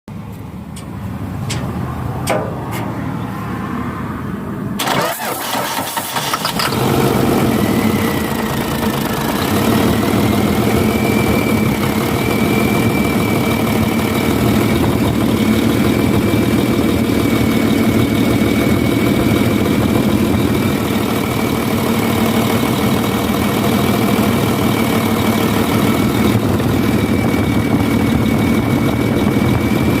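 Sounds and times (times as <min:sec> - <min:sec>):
diesel engine cranking and idling: 0:00.1 - 0:30.0
turbocharger whistle: 0:06.9 - 0:15.2.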